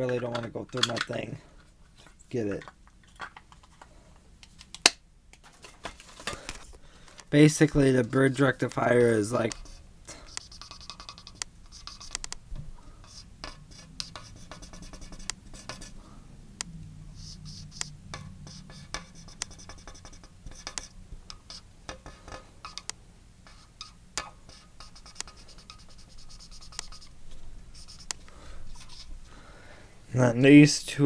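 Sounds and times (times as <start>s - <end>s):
faint low hum: 0.0s - 31.0s
pen scratching on paper: 9.5s - 12.4s, 13.0s - 16.0s, 17.1s - 21.7s, 22.7s - 29.1s
pen tapping: 9.5s - 12.4s, 13.0s - 16.0s, 17.2s - 27.1s, 27.8s - 28.2s.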